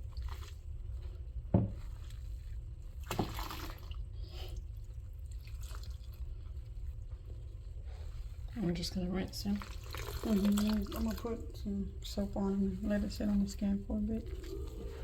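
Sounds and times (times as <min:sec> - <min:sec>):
bathwater splashing and dripping: 0:00.0 - 0:01.2, 0:01.8 - 0:08.4, 0:09.3 - 0:15.0
low hum: 0:04.0 - 0:15.0.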